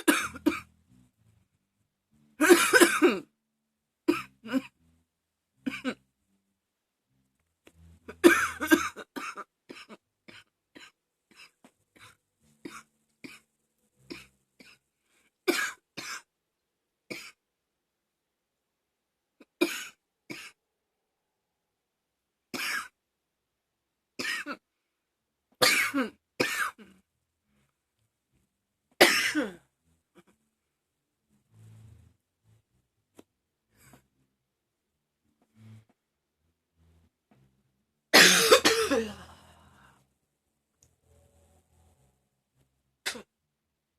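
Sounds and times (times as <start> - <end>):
woman coughing: 0.0 - 0.7, 2.4 - 3.3, 5.7 - 6.0, 8.1 - 11.6, 15.5 - 16.3, 19.4 - 20.6, 25.6 - 26.9, 29.0 - 29.6, 38.2 - 39.4.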